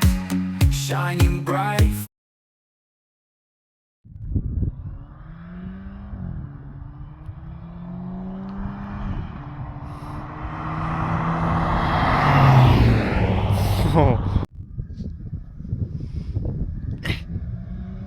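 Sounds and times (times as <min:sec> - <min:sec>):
road noise: 0:04.2 - 0:18.0
car engine accelerating: 0:04.4 - 0:14.5, 0:17.3 - 0:18.0.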